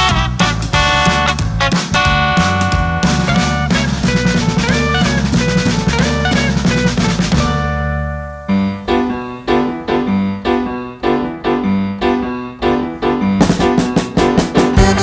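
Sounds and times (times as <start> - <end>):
drums: 0.0 - 11.7, 12.6 - 15.0
piano chords: 0.0 - 15.0
held chord: 14.8 - 15.0.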